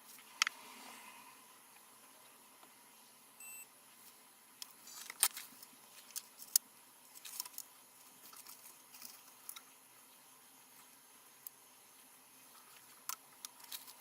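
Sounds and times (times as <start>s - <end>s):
small parts clicking and scraping: 4.6s - 9.7s, 12.5s - 14.0s.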